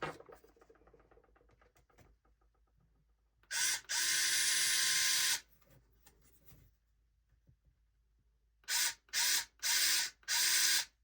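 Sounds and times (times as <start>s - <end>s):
drill-driver whirring: 3.5s - 5.4s, 8.7s - 11.0s.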